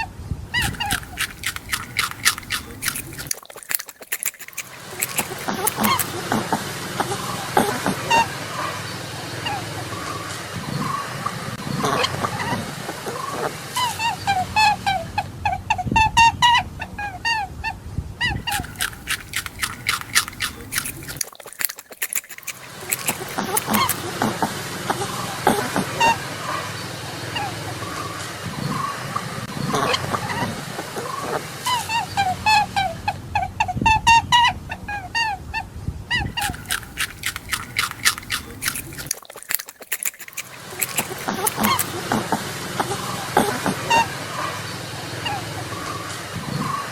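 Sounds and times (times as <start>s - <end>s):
rabbit chewing food: 0.5s - 6.6s, 18.4s - 24.5s, 36.2s - 44.1s.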